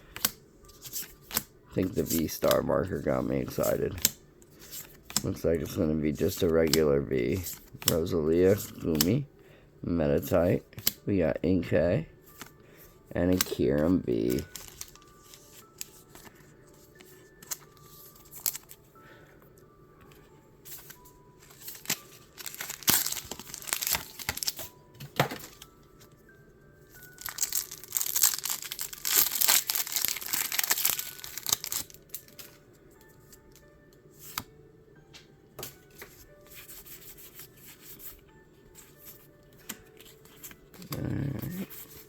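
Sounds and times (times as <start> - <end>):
plastic foil wrapper tearing: 14.2 - 15.7, 21.4 - 24.6, 27.0 - 32.6
wrapper crackles: 14.2 - 16.2, 20.8 - 24.8, 27.0 - 32.6.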